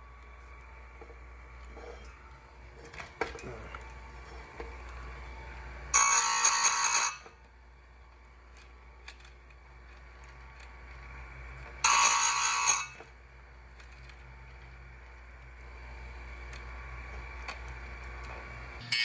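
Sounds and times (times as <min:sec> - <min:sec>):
grinding wheel ringing rasp: 0:05.9 - 0:07.4, 0:11.8 - 0:13.1, 0:18.8 - 0:19.0.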